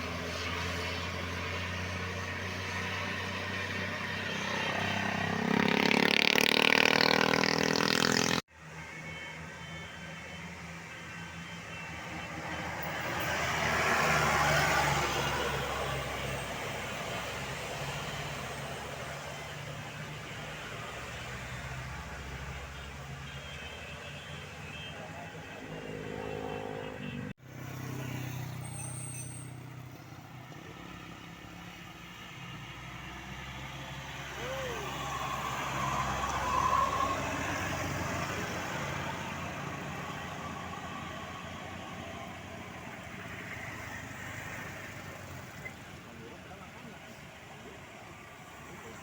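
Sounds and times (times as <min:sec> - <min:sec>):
bus engine noise: 0:00.0 - 0:49.0
road traffic: 0:00.0 - 0:49.0.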